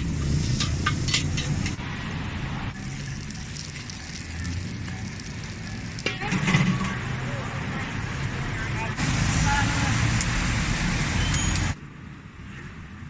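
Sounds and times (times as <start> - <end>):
traffic rumbling: 0.0 - 13.0.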